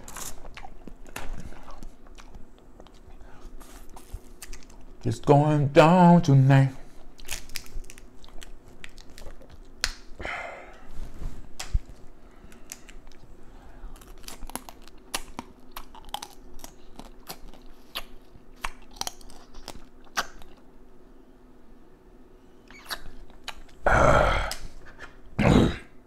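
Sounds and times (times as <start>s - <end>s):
chewing crunchy crab: 0.0s - 5.0s, 7.0s - 10.1s, 12.5s - 20.7s.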